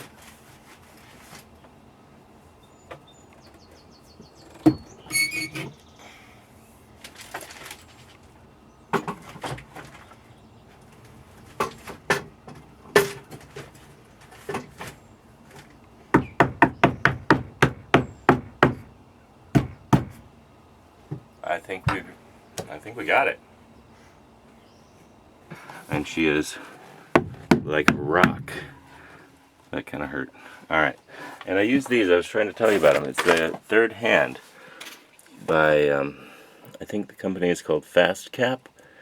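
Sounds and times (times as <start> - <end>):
knocks on wooden panel: 16.1 - 18.9, 19.5 - 20.2, 27.2 - 28.6.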